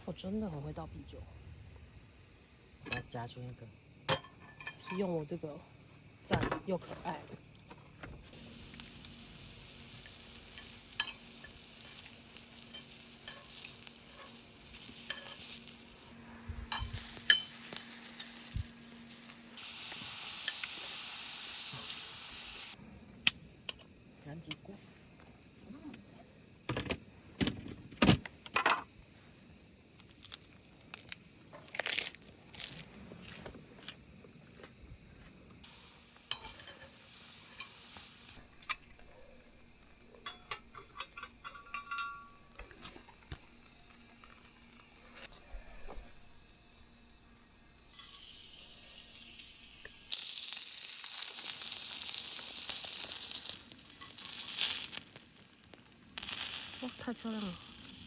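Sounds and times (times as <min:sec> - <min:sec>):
food sizzling on a hot pan: 0:02.8 - 0:22.8, 0:35.6 - 0:38.4, 0:47.4 - 0:58.0
cookware knocking and clattering: 0:40.3 - 0:42.4.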